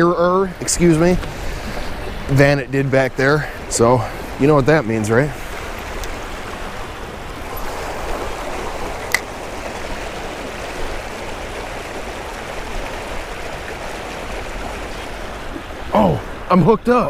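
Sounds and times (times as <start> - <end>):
flowing river water: 0.0 - 17.0.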